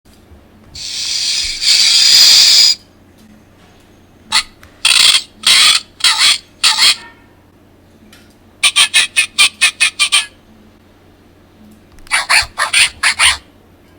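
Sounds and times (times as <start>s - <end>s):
snake hiss sound effect: 0.8s - 2.8s
harsh squawking bird calls: 4.3s - 7.0s, 8.6s - 10.4s, 12.1s - 13.4s.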